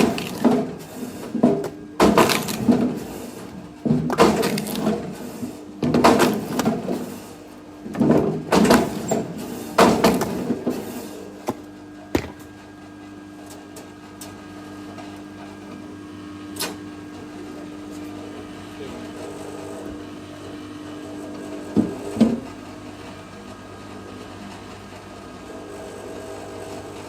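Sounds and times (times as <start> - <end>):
wood splitting cracks: 0.0 - 0.7, 2.0 - 3.0, 3.9 - 5.1, 12.2 - 12.5
sharp knocks: 12.2 - 12.5.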